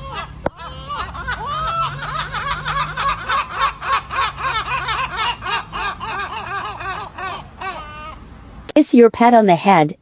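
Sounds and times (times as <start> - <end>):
person laughing high-pitched: 0.0 - 5.3.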